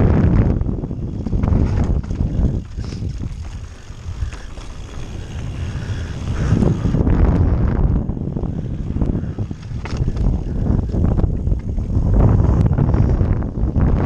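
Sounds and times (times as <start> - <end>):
bike tyres rumbling on dirt: 0.0 - 14.0
wind buffeting microphone: 0.0 - 14.0
bike rattling knocks: 1.1 - 6.5, 9.4 - 11.8.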